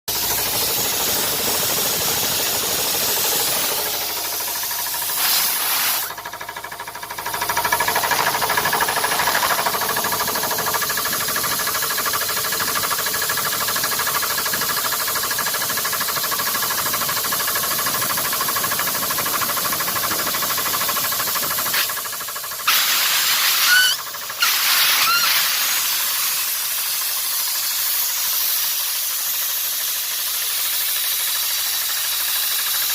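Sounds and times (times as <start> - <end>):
compressor hissing: 0.1 - 32.9
short rising squeaks: 23.4 - 25.6.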